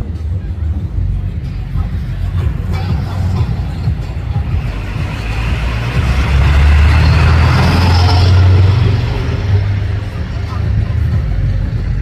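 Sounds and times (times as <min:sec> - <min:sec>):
vehicle driving past: 0:00.9 - 0:12.0.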